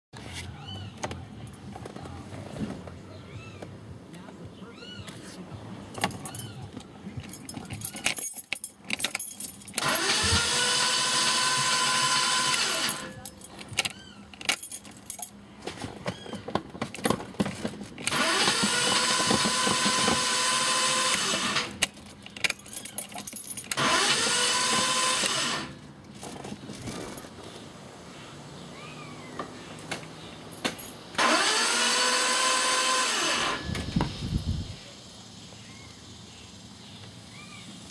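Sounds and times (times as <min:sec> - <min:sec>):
clicks and key rattles: 0:05.9 - 0:10.0, 0:12.6 - 0:15.8, 0:21.8 - 0:23.8
starter cranking engine: 0:09.7 - 0:13.1, 0:18.0 - 0:22.5, 0:23.6 - 0:25.8, 0:31.2 - 0:33.7.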